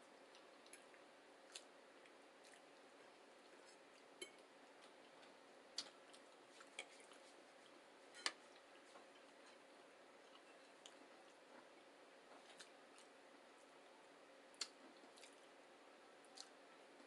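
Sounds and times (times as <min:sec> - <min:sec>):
faint eating clicks: 0:00.1 - 0:07.8, 0:14.5 - 0:15.5
chewing and mouth sounds: 0:00.1 - 0:13.8, 0:14.5 - 0:15.6, 0:16.2 - 0:16.6.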